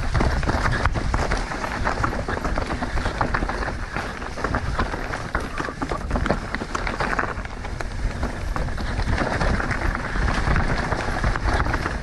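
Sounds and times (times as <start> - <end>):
bike rattling over bumps: 0.0 - 12.0
bike tyres rolling over dirt: 0.0 - 12.0
wind rumble on microphone: 0.0 - 12.0.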